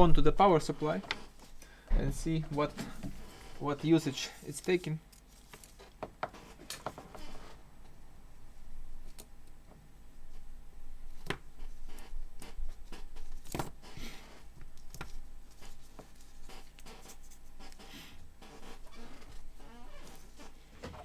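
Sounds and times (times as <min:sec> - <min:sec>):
soft rustling: 0:00.0 - 0:07.6, 0:10.2 - 0:21.0.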